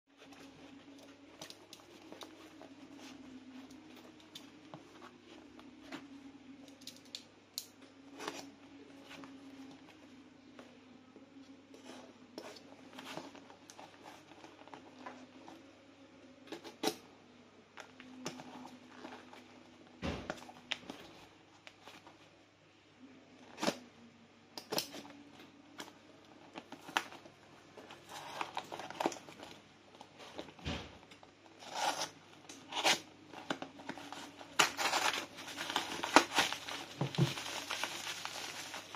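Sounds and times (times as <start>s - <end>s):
packaging rustling: 31.3s - 38.9s.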